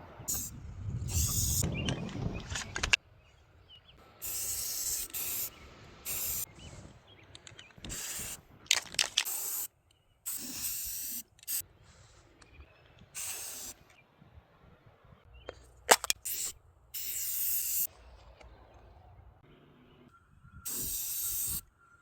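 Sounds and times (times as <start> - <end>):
spray hissing in bursts: 1.1 - 1.6, 4.2 - 6.5, 7.9 - 8.4, 9.3 - 9.7, 10.3 - 11.6, 13.2 - 13.8, 16.3 - 17.9, 20.7 - 21.6.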